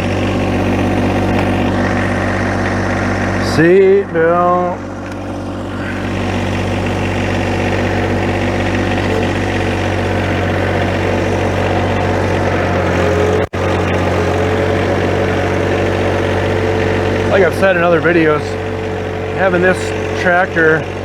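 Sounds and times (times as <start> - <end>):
tractor diesel engine running: 0.0 - 21.0.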